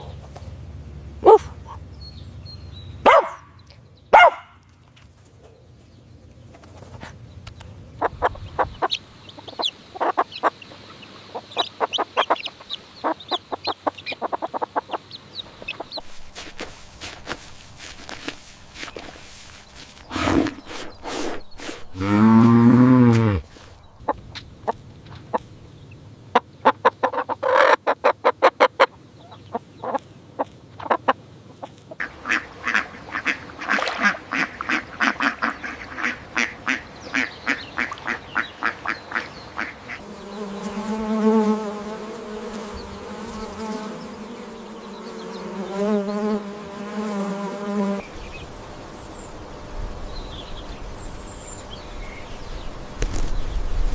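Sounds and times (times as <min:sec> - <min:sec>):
steady buzzing hum: 0:00.0 - 0:04.1
quick repeated animal calls: 0:20.0 - 0:23.6.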